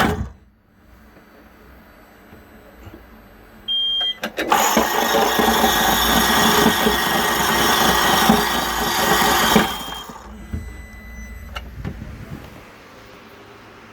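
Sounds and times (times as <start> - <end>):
electric starter whirring: 3.7 - 13.0.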